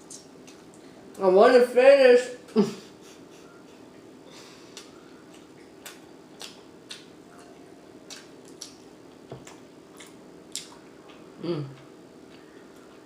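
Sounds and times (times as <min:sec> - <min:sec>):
faint steady hum: 0:00.0 - 0:13.0
mouth smacking while chewing: 0:04.7 - 0:08.8, 0:09.4 - 0:13.0.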